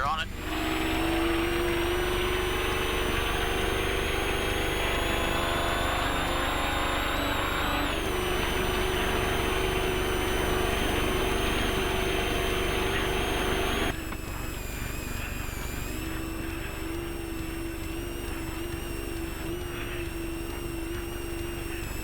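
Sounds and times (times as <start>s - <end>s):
truck engine running: 0.0s - 22.0s
road and tire noise: 0.4s - 14.3s.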